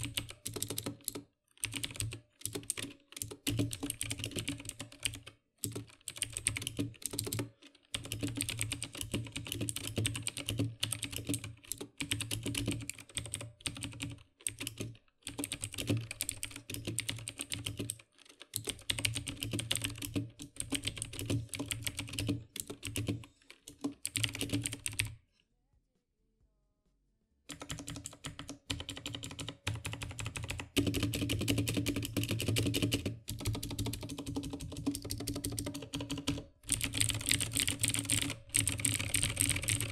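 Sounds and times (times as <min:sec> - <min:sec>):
mechanical keyboard typing: 0:00.0 - 0:25.2, 0:27.5 - 0:39.9.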